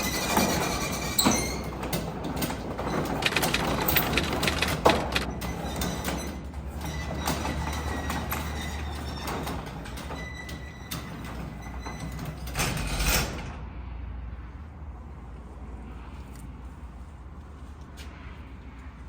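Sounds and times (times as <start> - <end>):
vehicle engine rumble: 0.0 - 6.8
loud clatter: 0.0 - 13.6
rattles and clicks: 0.0 - 13.6.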